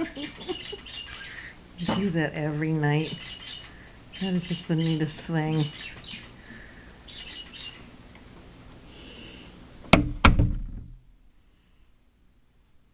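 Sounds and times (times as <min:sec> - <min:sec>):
electronic bird chirps: 0:00.2 - 0:02.2, 0:03.0 - 0:06.3, 0:07.1 - 0:07.9
sharp loud knocks: 0:09.9 - 0:11.0.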